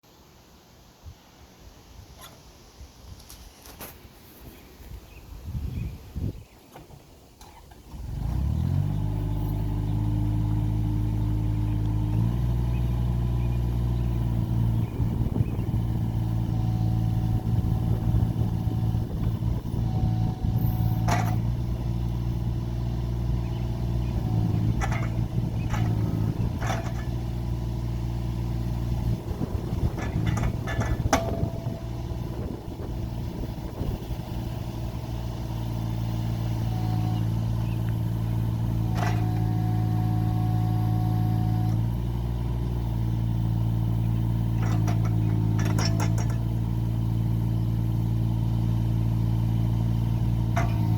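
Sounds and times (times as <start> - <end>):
diesel engine running: 7.2 - 50.9
metallic clanks: 20.6 - 21.7, 24.0 - 27.6, 29.0 - 32.2, 38.8 - 39.8, 44.5 - 46.8, 50.5 - 50.9.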